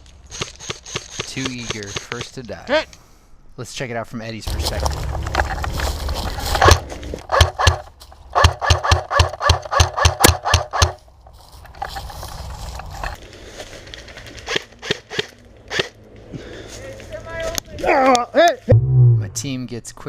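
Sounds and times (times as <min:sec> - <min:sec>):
airsoft gun shots: 0:06.6 - 0:07.8, 0:08.4 - 0:11.0.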